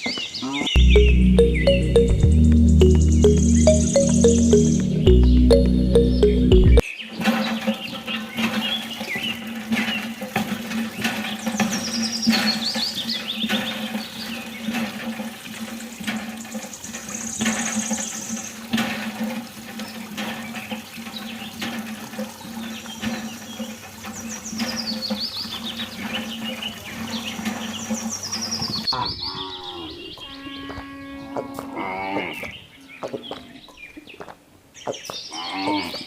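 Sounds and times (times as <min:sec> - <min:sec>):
high falling chirps: 0:00.8 - 0:06.8
cattle mooing: 0:29.3 - 0:32.5.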